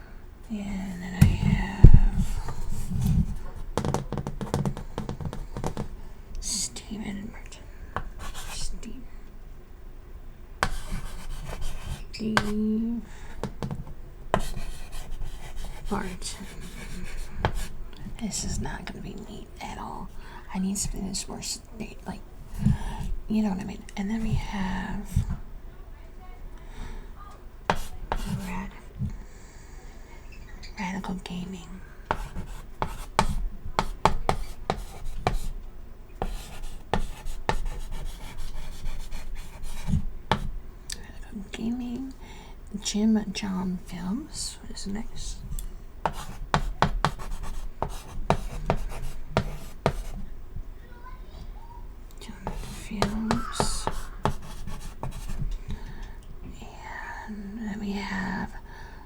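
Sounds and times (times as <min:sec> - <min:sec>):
chalk tapping and scraping on chalkboard: 0:01.2 - 0:06.0, 0:08.0 - 0:08.7, 0:10.6 - 0:12.7, 0:13.3 - 0:17.8, 0:27.7 - 0:28.8, 0:32.1 - 0:35.6, 0:36.2 - 0:40.6, 0:46.0 - 0:50.3, 0:52.3 - 0:55.6
low humming voice: 0:52.5 - 0:54.6.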